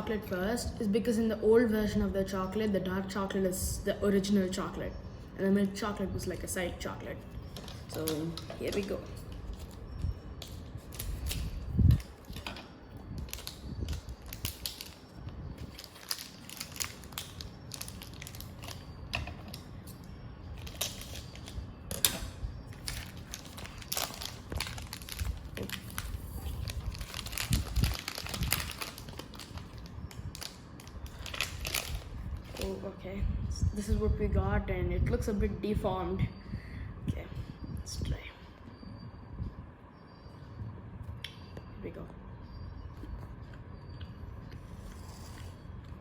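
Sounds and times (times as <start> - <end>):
wrapper crinkling: 7.4 - 19.6, 20.5 - 22.1, 22.7 - 32.8.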